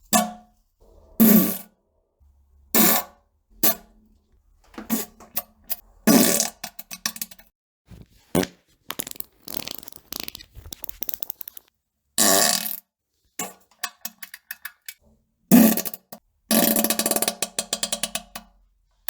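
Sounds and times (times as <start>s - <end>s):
fart sounds: 8.3s - 12.8s.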